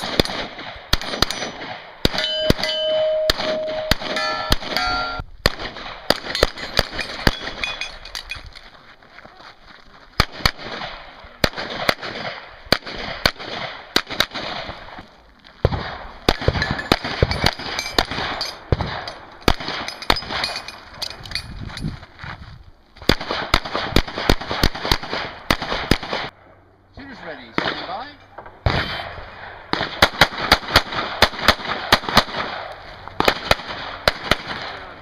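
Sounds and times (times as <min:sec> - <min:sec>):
pistol shots: 0:00.0 - 0:07.7, 0:10.2 - 0:15.0, 0:15.6 - 0:20.6, 0:23.1 - 0:26.3, 0:28.6 - 0:35.0.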